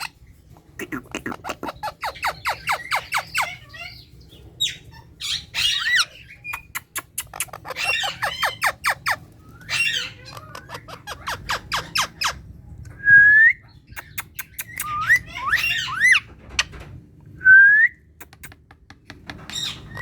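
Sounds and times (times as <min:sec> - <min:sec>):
parakeet squawking and chattering: 0:00.0 - 0:12.5, 0:13.8 - 0:16.7
parakeet warbling calls: 0:07.3 - 0:12.4.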